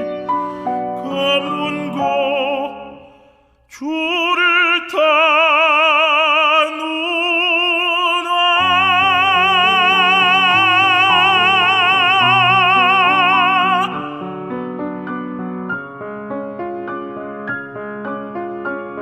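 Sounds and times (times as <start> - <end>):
piano chords: 0.0 - 3.2, 7.2 - 19.0
tenor singing with vibrato: 0.0 - 14.5.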